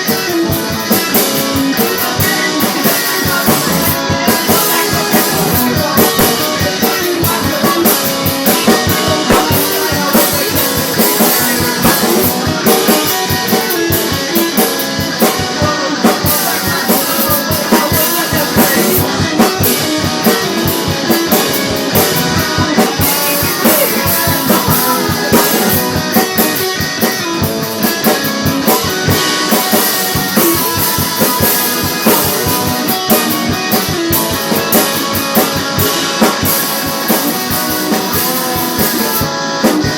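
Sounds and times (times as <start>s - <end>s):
drum kit playing: 0.0s - 39.9s
guitar playing: 0.0s - 39.9s.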